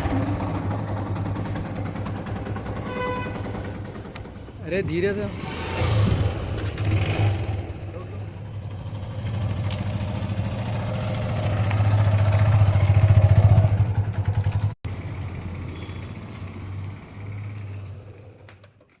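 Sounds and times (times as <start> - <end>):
motorcycle engine idling: 0.0 - 5.1, 7.6 - 16.0.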